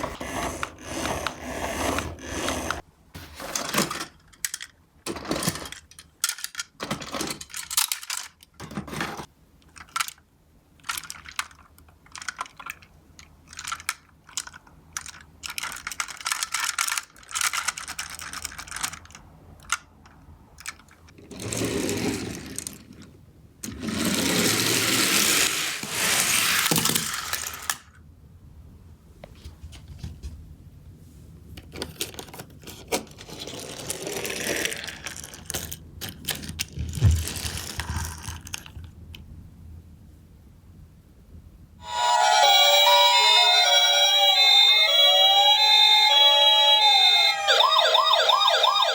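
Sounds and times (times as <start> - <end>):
toy cars clattering down a slope: 10.8 - 19.8, 20.6 - 27.9, 31.8 - 38.8.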